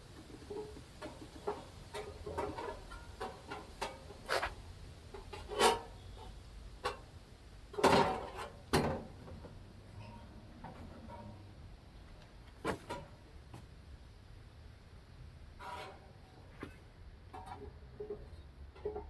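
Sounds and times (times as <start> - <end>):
fan parts clicking and knocking: 0.0 - 5.9, 7.7 - 9.6, 15.6 - 19.0.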